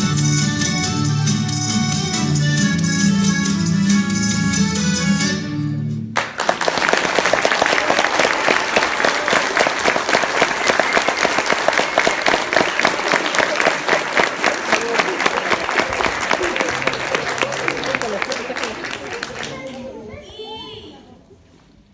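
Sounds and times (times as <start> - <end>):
audience applauding: 6.2 - 20.0.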